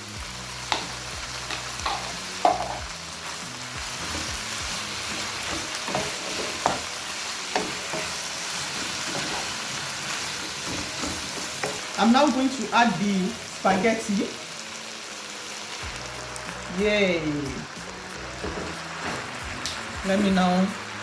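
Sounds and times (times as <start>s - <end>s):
food sizzling in a pan: 0.0s - 21.0s
spatula scraping a pan: 3.8s - 11.8s.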